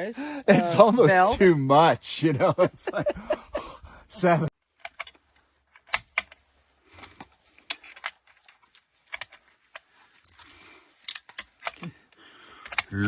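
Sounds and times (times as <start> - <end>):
small metal parts clicking and rattling: 4.8 - 13.0.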